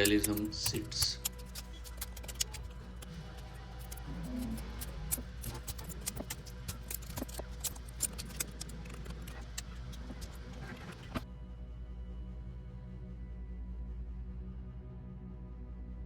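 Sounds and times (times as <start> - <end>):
small hard objects clicking: 0.0 - 11.2
low music drone: 0.0 - 16.0.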